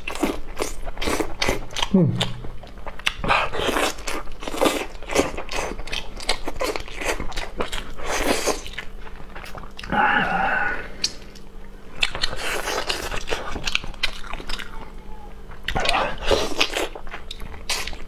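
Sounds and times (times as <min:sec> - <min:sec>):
brief pitched sound: 0:01.9 - 0:02.7.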